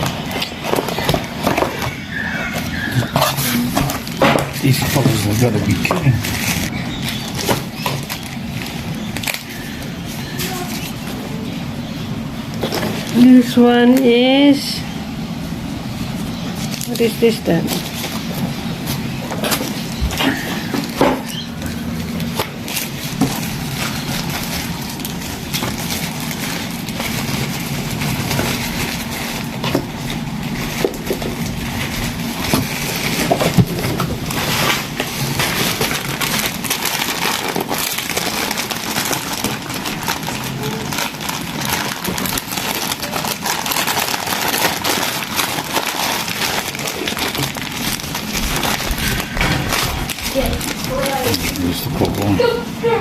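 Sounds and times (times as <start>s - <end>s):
packaging rustling and crinkling: 0.0s - 11.4s, 12.5s - 13.6s, 16.0s - 52.6s.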